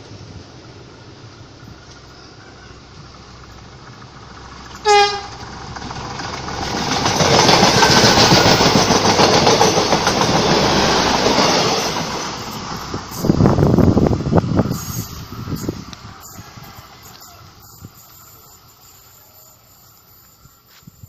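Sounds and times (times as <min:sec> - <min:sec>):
train passing with wheels clacking: 0:00.0 - 0:20.8
train horn blast: 0:04.8 - 0:05.4.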